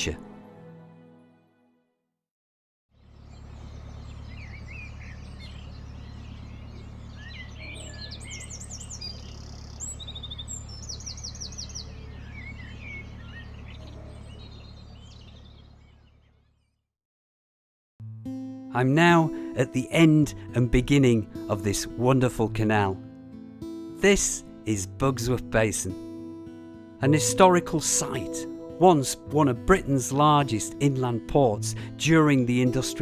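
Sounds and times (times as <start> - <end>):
boat diesel engine drone: 3.0 - 16.2, 27.0 - 33.0
birds chirping and singing: 3.1 - 16.4.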